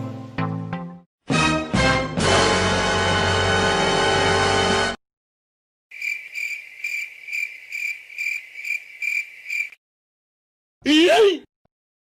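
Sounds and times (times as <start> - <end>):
cricket chirping: 5.9 - 9.8.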